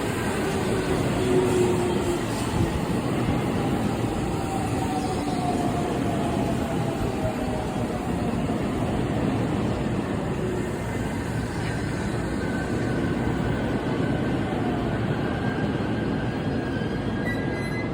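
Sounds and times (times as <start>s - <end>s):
train wheels rumbling on rail: 0.0s - 17.9s
train brake squeal: 16.7s - 17.9s.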